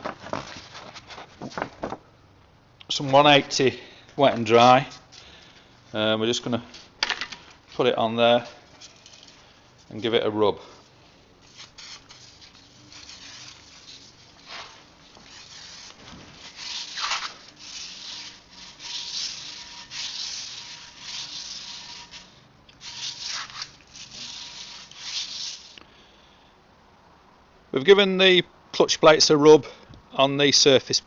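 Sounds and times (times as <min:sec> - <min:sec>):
metal plates scraping on sandpaper: 0:11.4 - 0:25.8.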